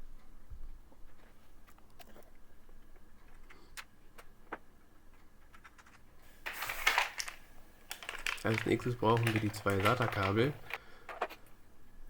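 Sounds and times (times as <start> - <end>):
cable clicks and taps: 7.9 - 11.5.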